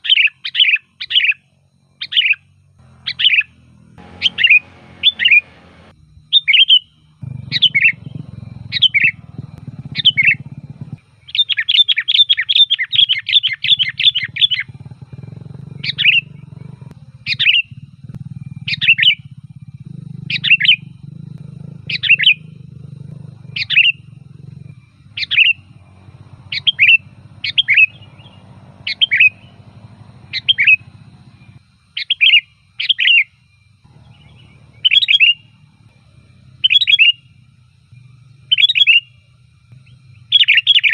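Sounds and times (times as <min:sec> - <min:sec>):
bulbul calling sharp notes: 0:02.9 - 0:05.9, 0:24.7 - 0:31.6, 0:33.9 - 0:37.4.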